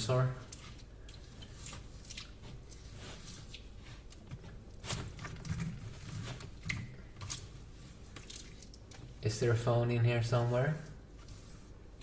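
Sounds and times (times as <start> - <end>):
wet chocolate squishing: 0.4 - 9.2.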